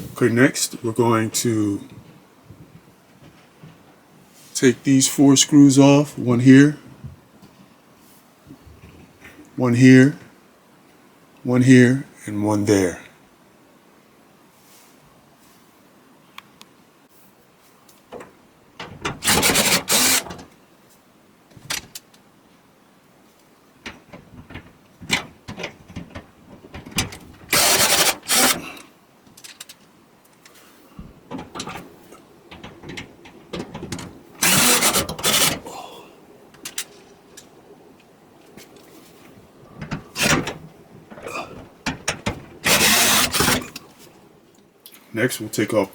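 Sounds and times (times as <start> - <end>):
handling clicks and knocks: 17.9 - 20.6, 23.8 - 35.7, 36.4 - 44.7
power screwdriver backing out screws: 19.2 - 20.4, 26.8 - 28.8, 32.5 - 35.7, 42.6 - 43.8.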